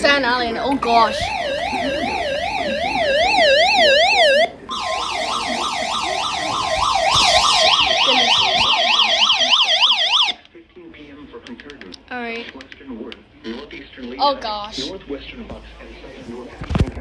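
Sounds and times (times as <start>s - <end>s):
steady high tone: 0.8s - 10.4s
warbling alert siren: 0.8s - 10.4s.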